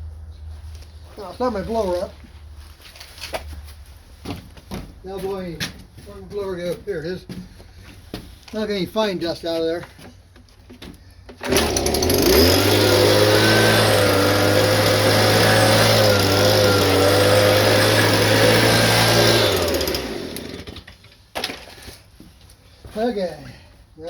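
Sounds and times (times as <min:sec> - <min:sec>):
handheld blower running: 0:11.3 - 0:20.9.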